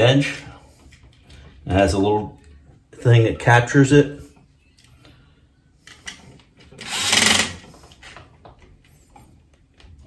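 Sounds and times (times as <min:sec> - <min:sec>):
electric screwdriver whirring: 0:06.8 - 0:07.6.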